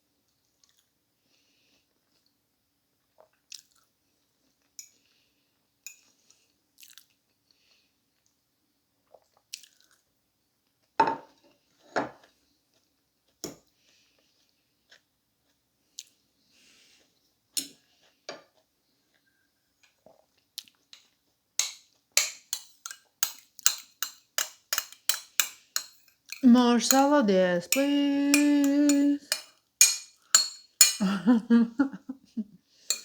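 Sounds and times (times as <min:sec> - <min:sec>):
utensil clicking against a plate: 0:21.6 - 0:31.1.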